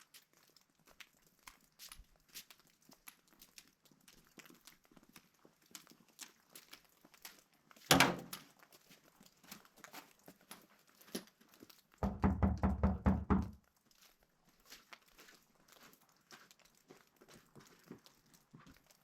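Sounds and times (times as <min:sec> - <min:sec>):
loud thump: 0:07.9 - 0:08.3
horse knocks and clicks: 0:07.9 - 0:08.4, 0:12.0 - 0:13.6.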